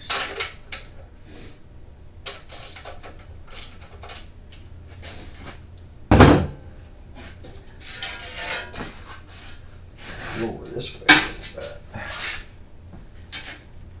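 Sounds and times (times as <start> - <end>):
clattering scrape: 7.2 - 10.6.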